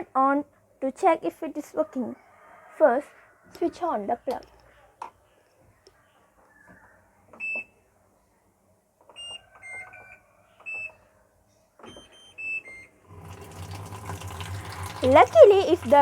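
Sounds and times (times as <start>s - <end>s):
washing machine button beeps: 7.4s - 7.7s, 9.2s - 10.9s, 11.8s - 15.3s.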